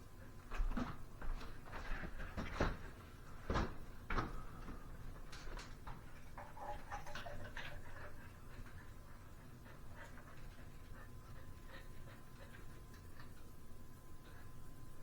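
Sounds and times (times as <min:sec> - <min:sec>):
clicks and knocks of fan housing: 0:02.2 - 0:06.0.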